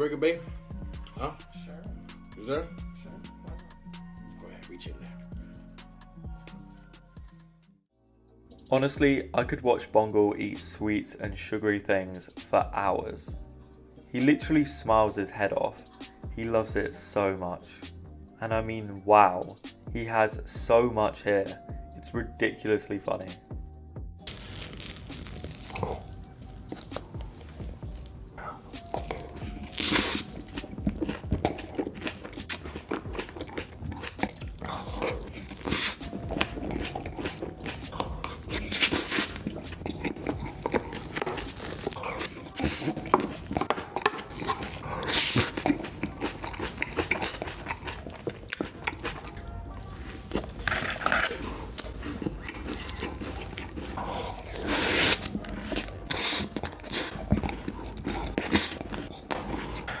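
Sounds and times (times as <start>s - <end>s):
chewing food: 24.3s - 60.0s
crunching bites of food: 24.3s - 60.0s.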